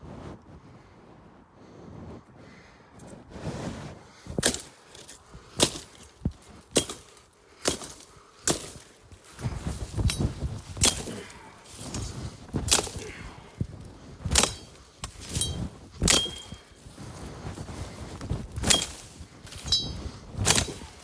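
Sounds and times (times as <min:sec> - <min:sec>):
rustling of stalks: 0:04.0 - 0:21.0
hand tool chopping plant stalks: 0:04.4 - 0:21.0.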